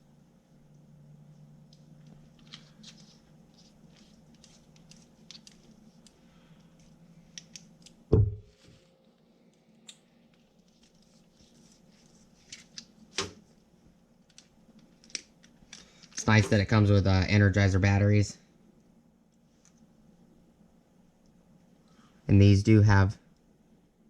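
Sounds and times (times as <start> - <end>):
heavy thump: 8.1 - 8.5.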